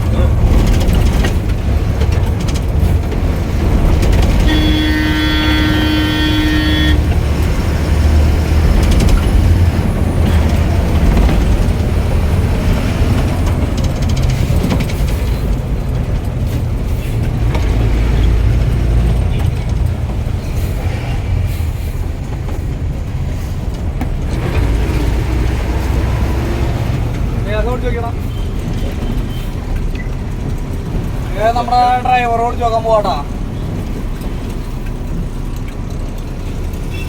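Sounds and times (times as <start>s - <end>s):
bus diesel engine running: 0.0s - 37.0s.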